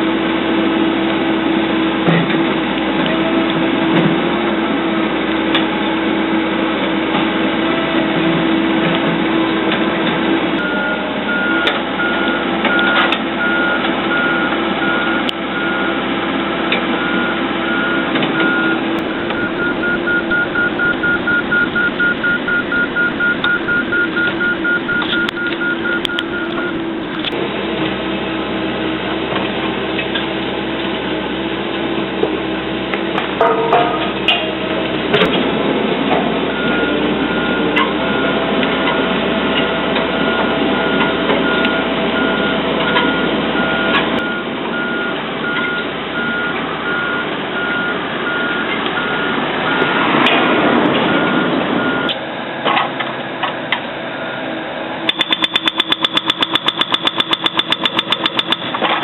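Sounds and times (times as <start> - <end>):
excavator engine running: 0.0 - 59.0
travel alarm beeping: 10.6 - 16.0, 17.0 - 27.4, 36.5 - 50.0, 51.1 - 52.2, 55.1 - 58.9.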